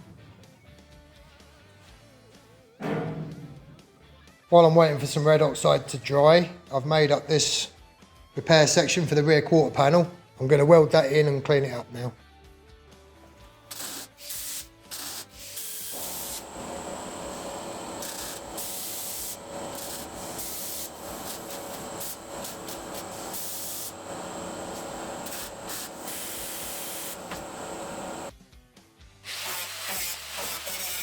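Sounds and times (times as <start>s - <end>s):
angle grinder grinding steel: 15.9s - 28.3s.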